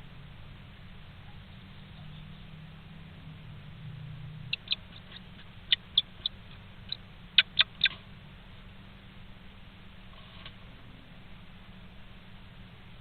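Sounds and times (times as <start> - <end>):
bird squeaking: 4.5 - 8.0.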